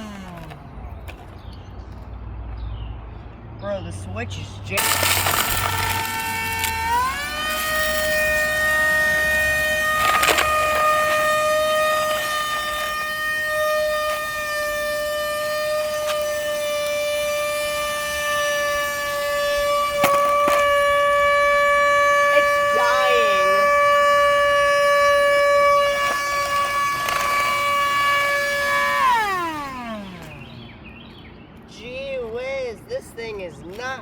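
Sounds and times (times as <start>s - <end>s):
vacuum motor whining: 0.0s - 1.4s, 4.8s - 30.8s
person speaking: 22.5s - 23.8s, 31.7s - 34.0s.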